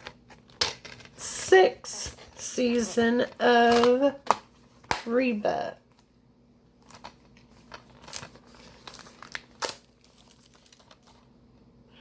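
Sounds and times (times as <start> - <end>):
plastic packaging crinkling: 6.8 - 11.3.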